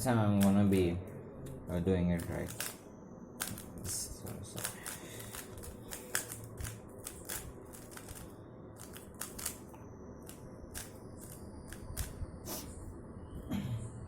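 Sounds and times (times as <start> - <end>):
puzzle cube plastic clicks: 4.6 - 9.6.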